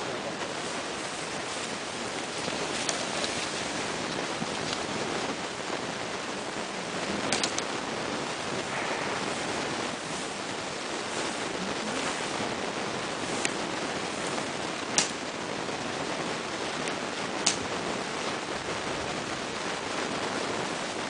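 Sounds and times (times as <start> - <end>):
wind on microphone: 0.0 - 21.0
sharp clicks: 7.3 - 7.7, 14.9 - 15.2, 17.4 - 17.6.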